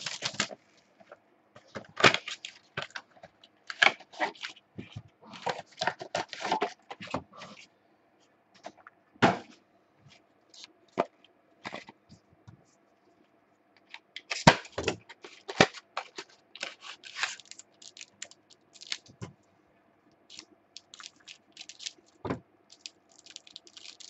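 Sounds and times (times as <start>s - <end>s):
trading card packs being opened: 15.2s - 19.1s.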